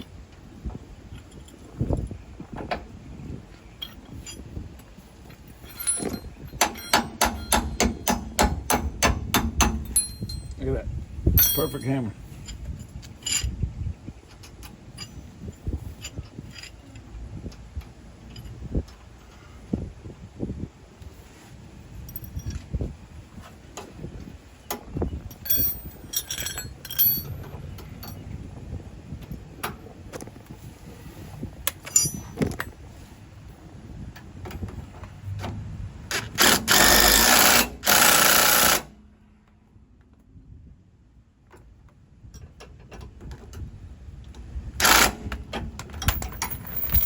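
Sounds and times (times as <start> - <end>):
metal tools clinking: 3.7 - 8.2, 9.8 - 10.7, 11.3 - 13.6, 25.2 - 28.3, 31.7 - 32.8, 45.9 - 47.0
hand tools clicking and knocking: 5.6 - 10.6, 31.7 - 32.7, 44.8 - 47.0.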